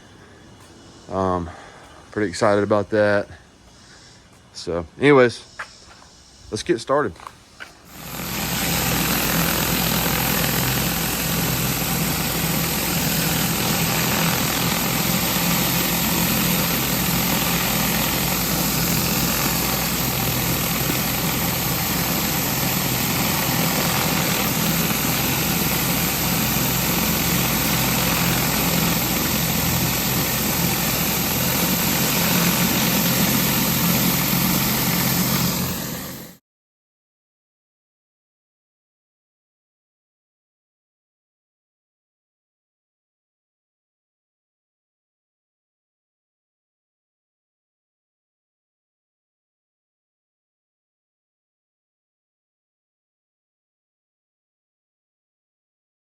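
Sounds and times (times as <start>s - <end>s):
pressure washer engine drone: 7.7s - 36.4s
high-pressure water spraying: 7.8s - 36.4s.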